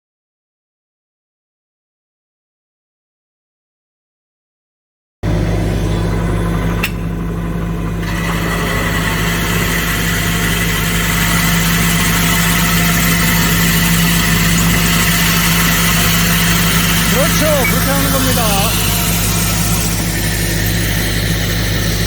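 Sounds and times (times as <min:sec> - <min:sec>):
excavator diesel engine running: 0:05.3 - 0:22.0
high whine and hiss: 0:12.1 - 0:22.0.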